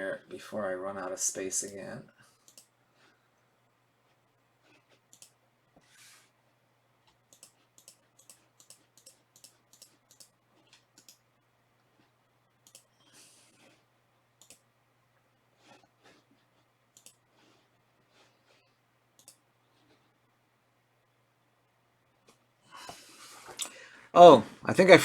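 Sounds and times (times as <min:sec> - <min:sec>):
faint irregular clicking: 0:01.6 - 0:02.8, 0:04.0 - 0:05.9, 0:07.0 - 0:13.8, 0:14.4 - 0:14.7, 0:15.7 - 0:20.1.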